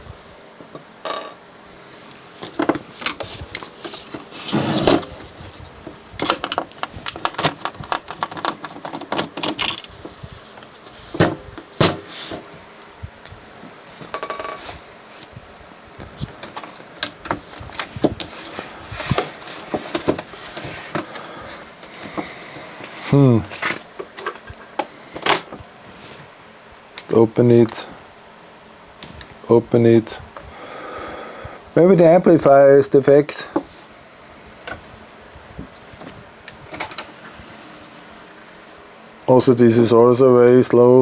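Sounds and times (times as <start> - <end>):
plastic and metal parts clattering: 2.4 - 10.0, 16.2 - 21.1.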